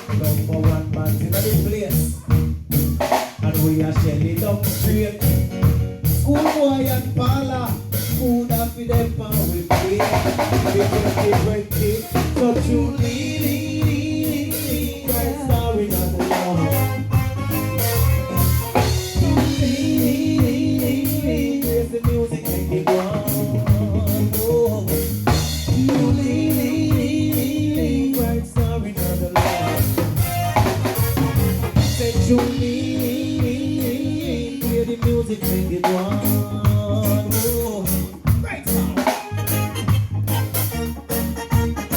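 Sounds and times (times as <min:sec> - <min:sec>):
heavy bass line: 0:00.0 - 0:41.9
drum kit hits: 0:09.0 - 0:21.4, 0:22.1 - 0:27.6, 0:28.6 - 0:34.0
sustained keyboard phrase: 0:38.4 - 0:41.9.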